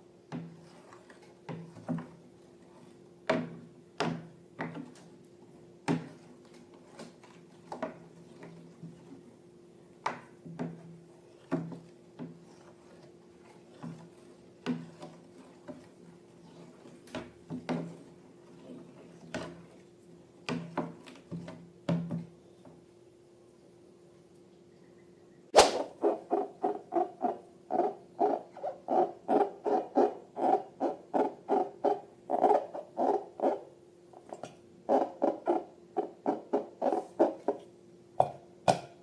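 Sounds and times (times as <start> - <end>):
faint steady hum: 0.0 - 39.0
sharp crack: 25.5 - 26.0.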